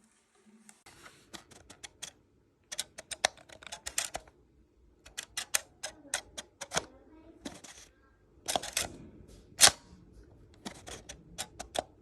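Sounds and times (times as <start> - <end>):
light plastic clicks: 1.3 - 4.4, 5.0 - 9.0, 9.6 - 12.0.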